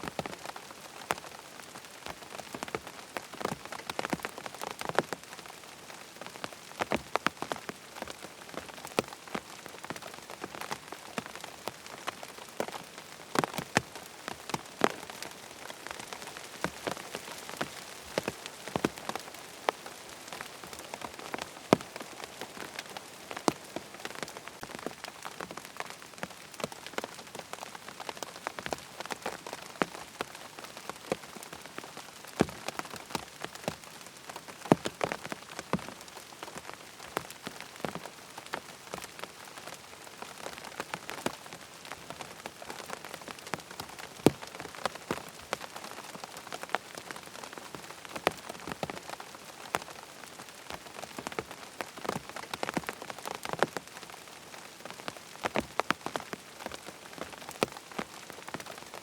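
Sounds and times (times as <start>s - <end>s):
rain on tent fabric: 0.0s - 59.0s.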